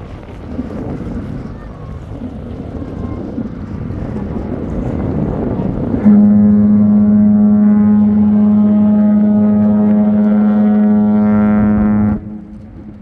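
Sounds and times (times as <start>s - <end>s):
ship's horn blast: 6.0s - 13.0s.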